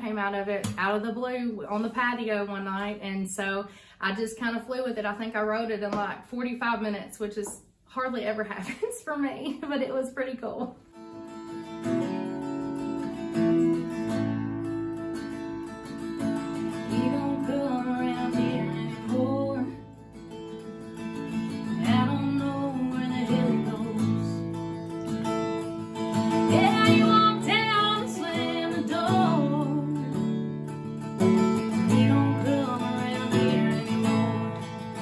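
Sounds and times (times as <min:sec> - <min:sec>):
strummed acoustic guitar: 0:10.8 - 0:35.0
woman singing: 0:16.7 - 0:20.0, 0:21.5 - 0:24.4, 0:26.3 - 0:30.4, 0:31.4 - 0:35.0.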